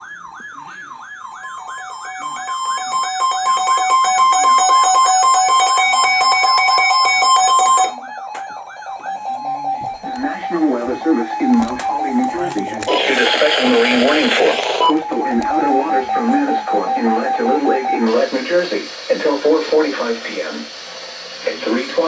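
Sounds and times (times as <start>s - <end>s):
electronic wailing siren: 0.0s - 22.0s.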